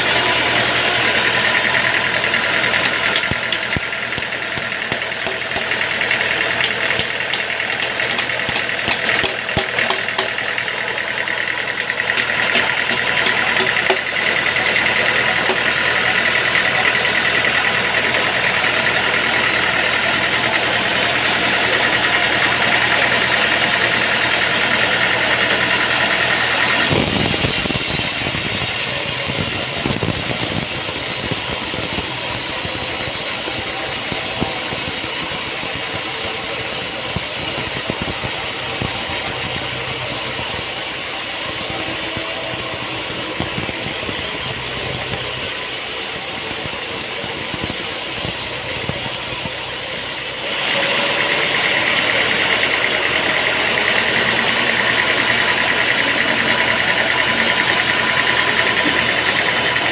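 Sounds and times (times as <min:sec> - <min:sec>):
high whine: 0:00.0 - 0:20.0, 0:26.4 - 0:50.4
machinery running steadily: 0:00.0 - 0:59.9
rough machine noise: 0:00.0 - 0:59.9.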